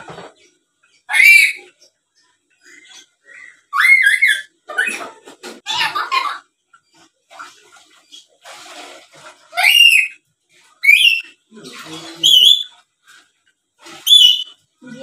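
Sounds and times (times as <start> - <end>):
parrot shrill whistled calls: 1.1 - 1.7, 3.7 - 4.9, 9.6 - 10.2, 10.8 - 11.4, 12.2 - 12.8, 14.0 - 14.6.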